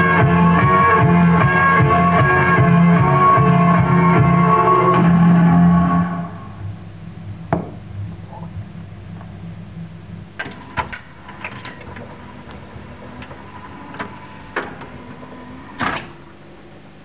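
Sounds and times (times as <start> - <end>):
faint hum and hiss: 5.5 - 17.0.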